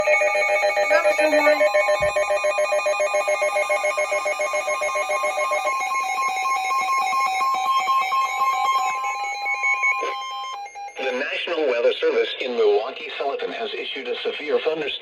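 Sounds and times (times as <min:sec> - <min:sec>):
electronic trill of pulsing tones: 0:00.0 - 0:11.4
steady high beep: 0:00.0 - 0:11.4.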